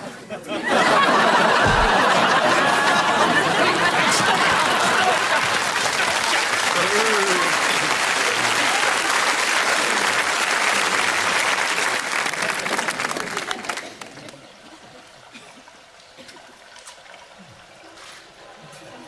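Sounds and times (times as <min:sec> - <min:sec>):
audience applauding: 0:00.8 - 0:14.5.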